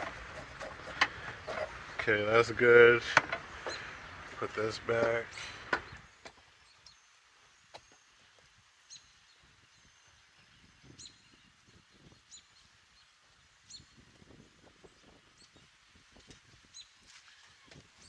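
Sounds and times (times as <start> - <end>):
faint taps: 0.0 - 2.1, 3.1 - 4.4, 5.0 - 6.4.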